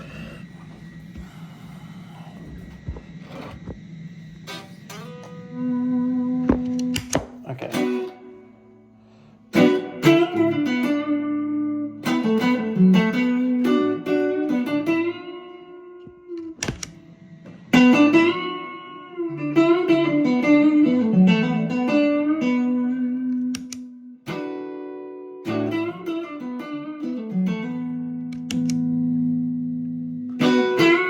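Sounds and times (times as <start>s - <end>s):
clean electric guitar: 0.0s - 31.0s.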